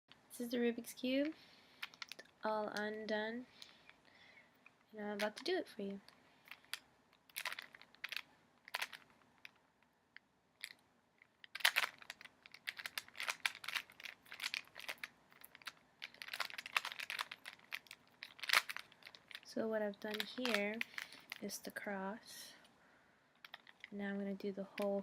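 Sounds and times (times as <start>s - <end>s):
puzzle cube clicking plastic: 1.2s - 2.9s, 6.4s - 9.6s, 10.2s - 21.6s, 23.4s - 24.0s.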